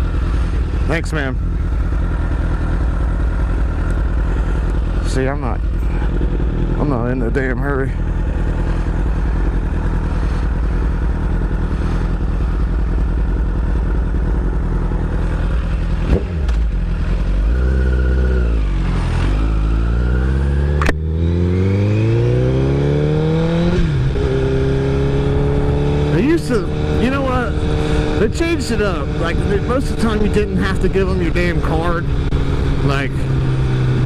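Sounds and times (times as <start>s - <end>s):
motorcycle engine revving: 0.0s - 34.0s.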